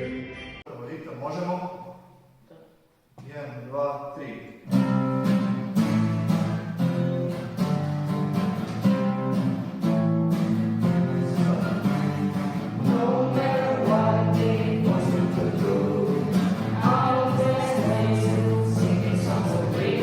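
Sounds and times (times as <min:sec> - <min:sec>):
strummed acoustic guitar: 0:04.7 - 0:20.0
person singing: 0:11.0 - 0:20.0.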